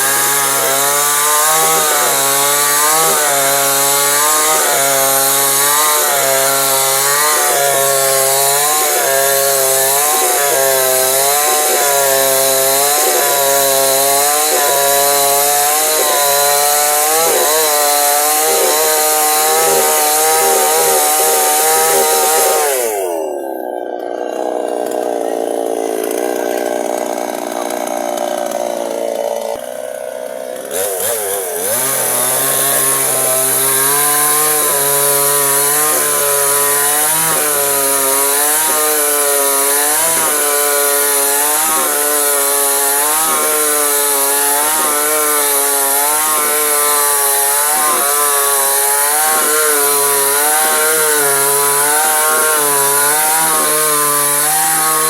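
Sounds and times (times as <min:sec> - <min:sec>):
chainsaw cutting wood: 0:00.0 - 0:55.0.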